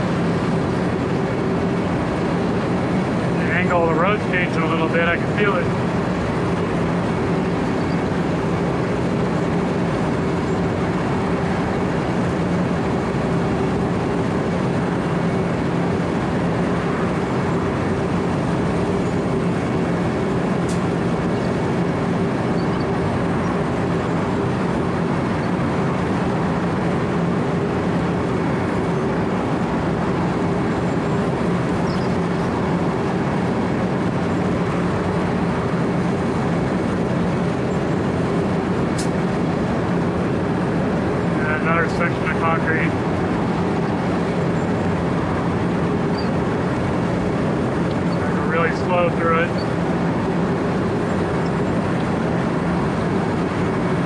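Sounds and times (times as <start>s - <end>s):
diesel engine drone: 0.0s - 54.0s.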